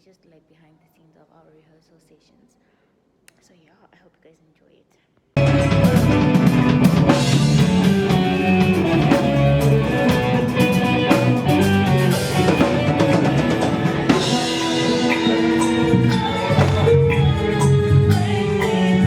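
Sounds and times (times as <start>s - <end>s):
drum kit beat: 5.4s - 19.0s
guitar and bass: 5.4s - 19.0s.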